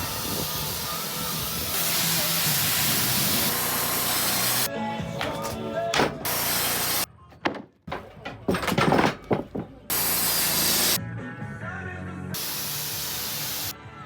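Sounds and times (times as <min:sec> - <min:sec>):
bursts of hissing noise: 0:00.0 - 0:04.7, 0:06.2 - 0:07.1, 0:09.9 - 0:11.0, 0:12.4 - 0:13.8
background music: 0:03.9 - 0:14.0.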